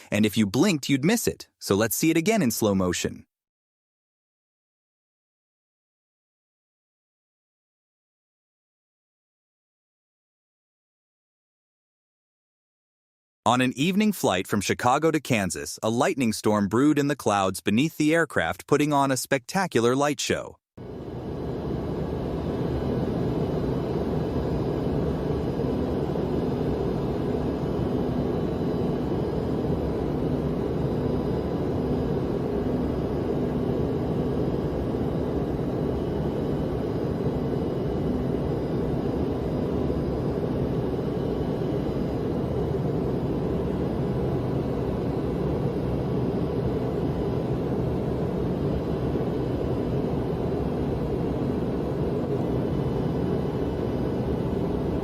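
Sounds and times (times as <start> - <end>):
faint steady hum: 20.8 - 55.0.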